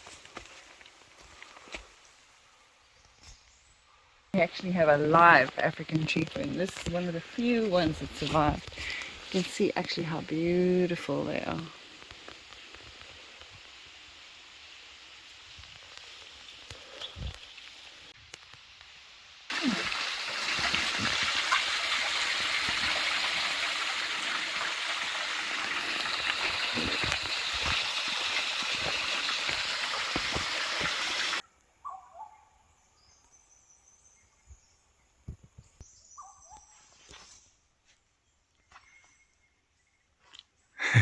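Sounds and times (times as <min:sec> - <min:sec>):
rushing stream water: 0:19.5 - 0:31.4
bird chirps: 0:31.8 - 0:34.8, 0:35.7 - 0:37.5.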